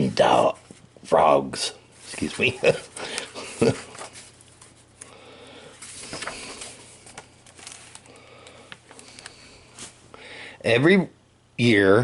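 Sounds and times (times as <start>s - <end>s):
book pages turning: 2.0s - 5.1s, 5.7s - 10.0s.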